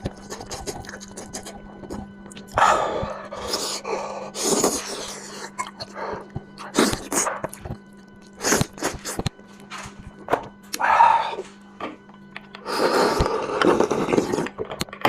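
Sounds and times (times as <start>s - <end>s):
faint steady hum: 0.0s - 15.0s
slurping and sucking: 0.1s - 7.6s, 8.3s - 9.2s, 12.6s - 14.6s.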